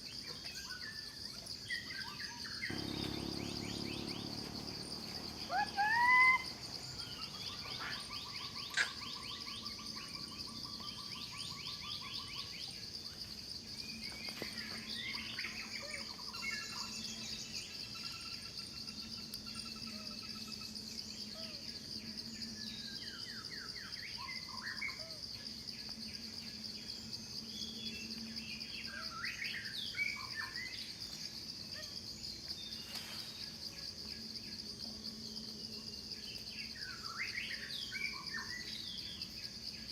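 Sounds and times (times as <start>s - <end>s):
bird calls and chirps: 0.0s - 12.9s, 35.9s - 39.9s
rising bird call: 2.7s - 8.3s
high-pitched insect drone: 2.7s - 8.6s.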